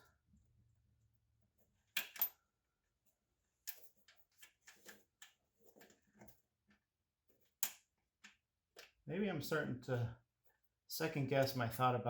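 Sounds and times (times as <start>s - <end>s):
small metal hardware clinking: 2.0s - 2.4s.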